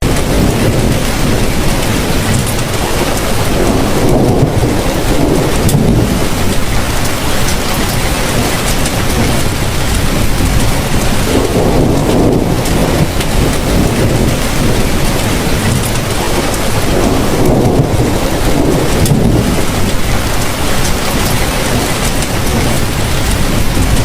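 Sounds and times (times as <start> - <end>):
heavy rain falling: 0.0 - 24.0
deep low rumble: 8.1 - 20.5, 21.1 - 24.0.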